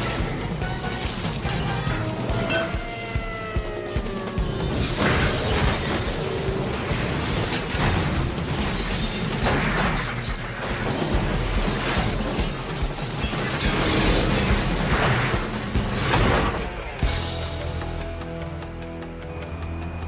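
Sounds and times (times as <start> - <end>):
dramatic film score: 0.0 - 20.0
heavy crashes and impacts: 4.7 - 17.1.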